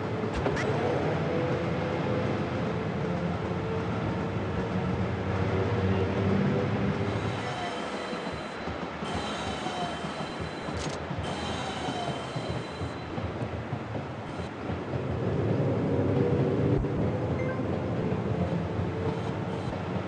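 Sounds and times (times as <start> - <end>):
train wheels on track: 0.0 - 20.0
faint high wheel squeal: 7.0 - 13.3.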